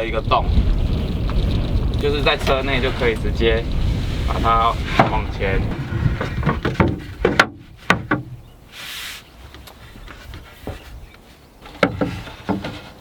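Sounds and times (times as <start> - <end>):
wooden knocks and clicks: 4.9 - 8.4, 9.5 - 13.0.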